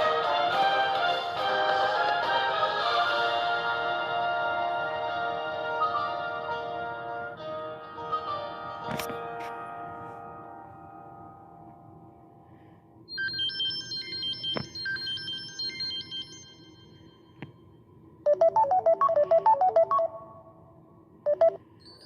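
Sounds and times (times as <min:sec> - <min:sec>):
chiming ringtone melody: 0:18.3 - 0:20.4, 0:21.3 - 0:22.0.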